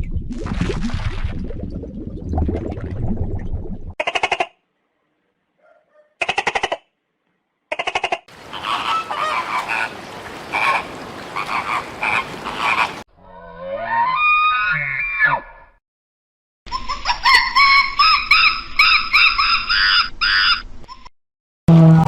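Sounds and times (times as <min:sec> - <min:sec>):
animal croaking calls: 0:07.8 - 0:15.4.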